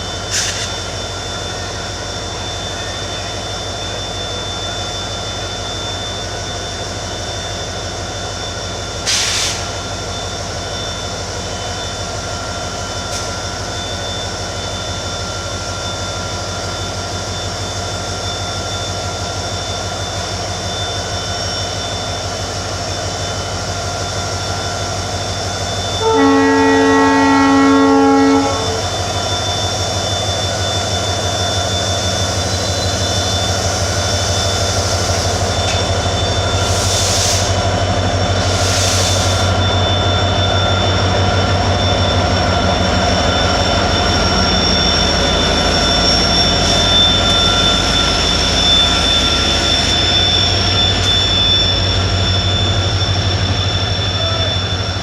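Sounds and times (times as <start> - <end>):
locomotive horn blast: 26.0 - 29.0.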